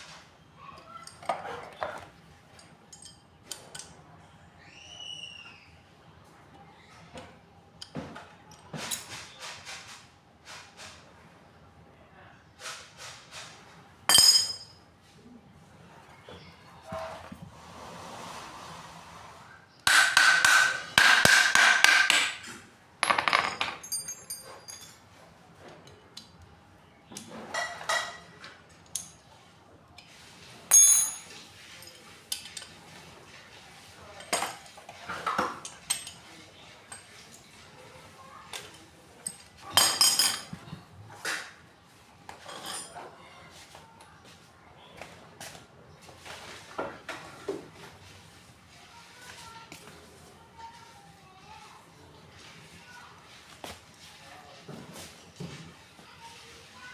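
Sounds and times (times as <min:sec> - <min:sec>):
metal tools clinking: 0:02.6 - 0:03.8, 0:14.1 - 0:14.8, 0:22.4 - 0:25.1, 0:30.7 - 0:32.8, 0:39.2 - 0:40.6.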